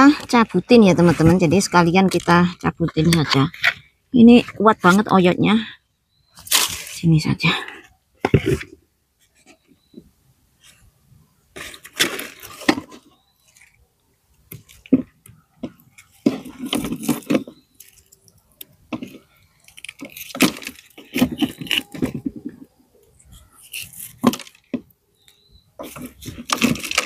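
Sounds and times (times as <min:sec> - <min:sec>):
dry plants rustling and crackling: 0:06.3 - 0:07.3, 0:11.5 - 0:27.0.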